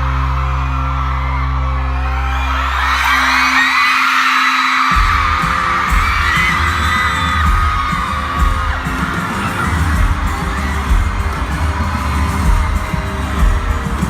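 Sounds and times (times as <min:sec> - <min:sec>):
crowd screaming: 0:00.0 - 0:14.0
live pop concert music: 0:00.0 - 0:14.0
heavy bass and drum beat: 0:04.8 - 0:14.0.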